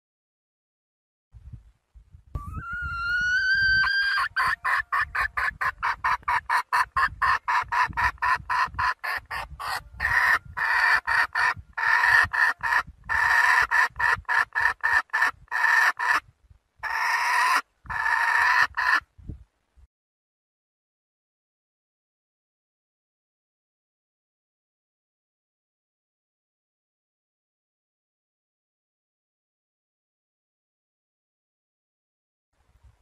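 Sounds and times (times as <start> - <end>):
hen clucking and cackling: 2.4 - 16.2, 16.8 - 19.1.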